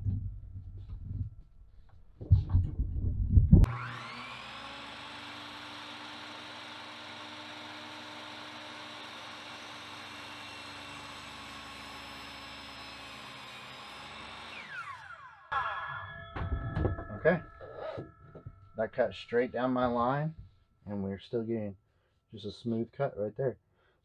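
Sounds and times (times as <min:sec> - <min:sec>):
miter saw motor whine: 0:03.7 - 0:15.6
loud knocks and clunks: 0:16.3 - 0:17.6.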